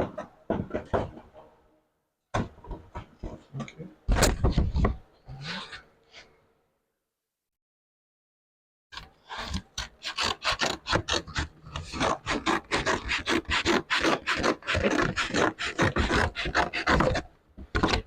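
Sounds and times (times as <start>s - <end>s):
hand tool rasping over metal: 9.3s - 18.0s.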